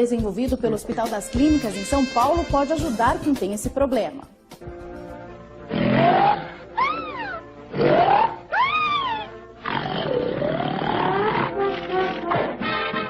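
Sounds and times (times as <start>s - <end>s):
person snoring: 5.7s - 8.4s.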